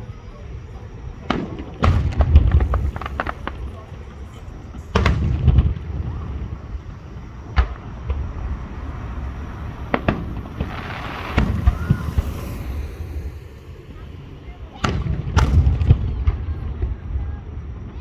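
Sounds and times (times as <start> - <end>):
fireworks bangs: 0.0 - 18.0
low rumble: 0.5 - 16.8.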